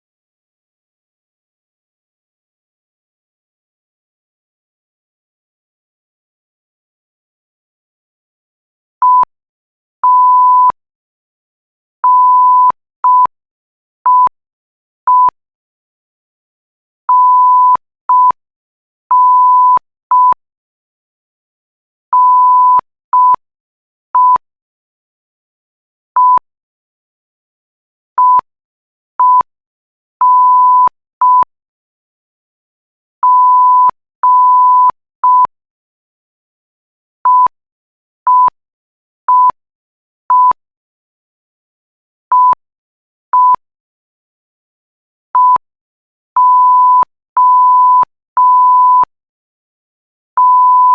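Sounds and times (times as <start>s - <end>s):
morse code beeps: 9.0s - 9.3s, 10.0s - 10.8s, 12.0s - 13.3s, 14.1s - 14.3s, 15.1s - 15.3s, 17.1s - 18.4s, 19.1s - 20.4s, 22.2s - 23.4s, 24.2s - 24.4s, 26.2s - 26.4s, 28.2s - 28.4s, 29.2s - 29.4s, 30.2s - 31.4s, 33.2s - 35.5s, 37.3s - 37.5s, 38.3s - 38.5s, 39.3s - 39.5s, 40.3s - 40.6s, 42.3s - 42.6s, 43.4s - 43.6s, 45.4s - 45.6s, 46.4s - 49.1s, 50.4s - 50.9s.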